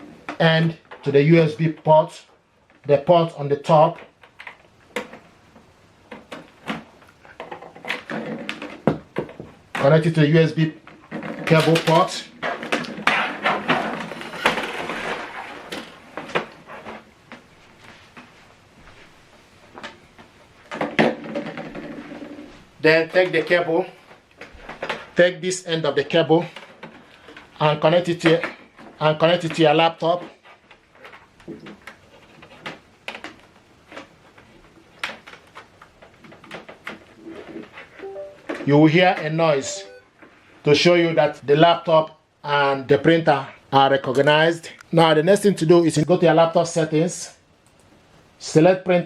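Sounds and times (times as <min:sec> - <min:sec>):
cable clicks and rustling: 0:03.8 - 0:10.0, 0:26.4 - 0:38.0, 0:47.6 - 0:48.1.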